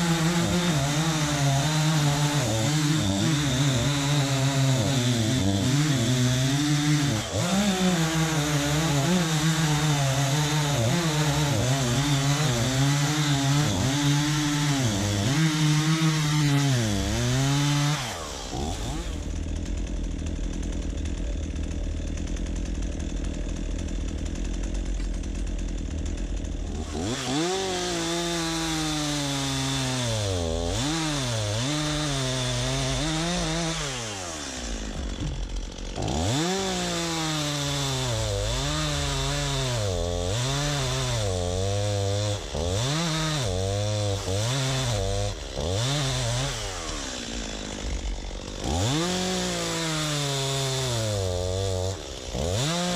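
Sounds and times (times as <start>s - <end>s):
chainsaw cutting logs: 0.0s - 52.9s.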